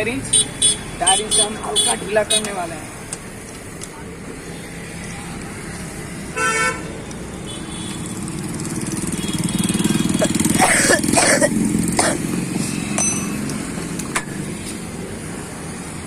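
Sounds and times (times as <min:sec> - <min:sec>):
motorcycle engine passing: 0:08.2 - 0:14.0
hand tools scraping and clicking: 0:12.6 - 0:14.8.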